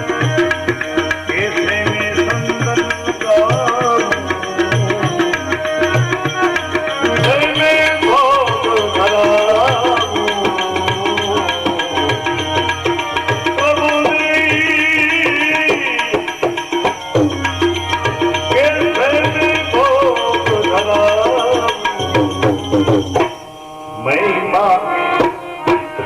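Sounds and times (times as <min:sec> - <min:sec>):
devotional singing melody: 0:00.0 - 0:26.0
hand drum beat: 0:15.2 - 0:19.6.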